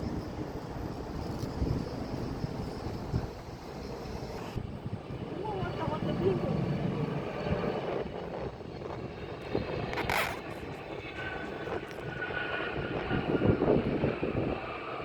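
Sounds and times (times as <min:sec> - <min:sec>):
jet airliner engine rumble: 0:00.0 - 0:15.0.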